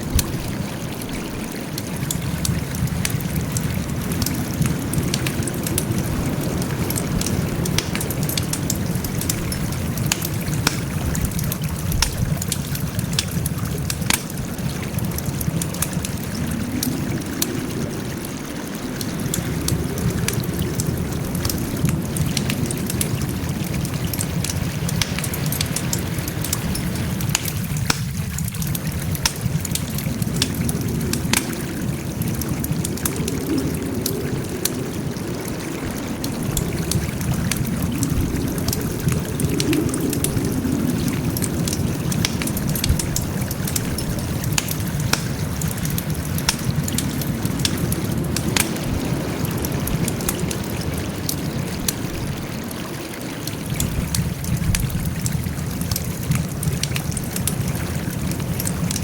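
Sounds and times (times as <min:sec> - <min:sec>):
wood fire rumbling: 0:00.0 - 0:59.0
crackling wood pops: 0:02.1 - 0:17.6, 0:19.3 - 0:34.8, 0:36.2 - 0:50.5.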